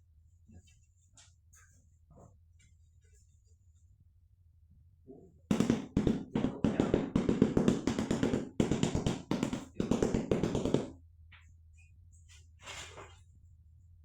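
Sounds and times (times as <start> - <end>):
rapid tapping on hard surface: 5.5 - 11.0.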